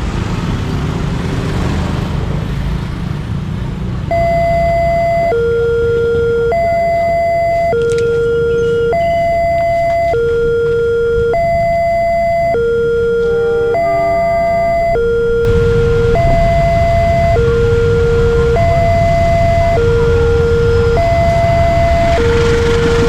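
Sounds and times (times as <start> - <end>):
level crossing two-tone siren: 4.1 - 23.0
steady low rumble: 4.1 - 23.0
low rumble: 13.8 - 23.0.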